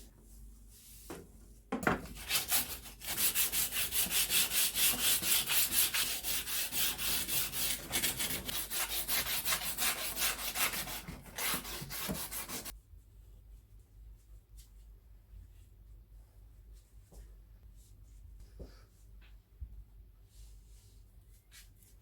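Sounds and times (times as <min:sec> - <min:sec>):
sanding wood by hand: 0:02.1 - 0:12.7.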